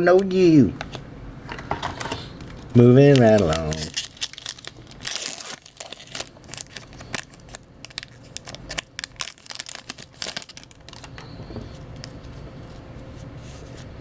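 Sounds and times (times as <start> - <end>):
cards being handled: 2.4 - 13.9
foil wrapper tearing and crinkling: 2.8 - 11.2.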